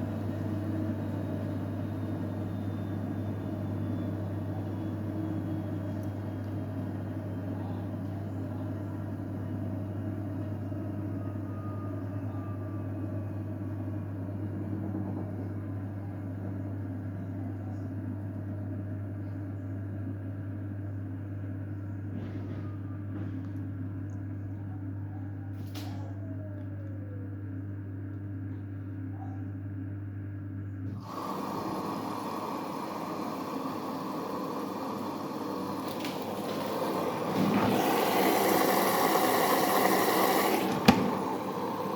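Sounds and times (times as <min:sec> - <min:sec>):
washing machine hum: 0:00.0 - 0:41.9.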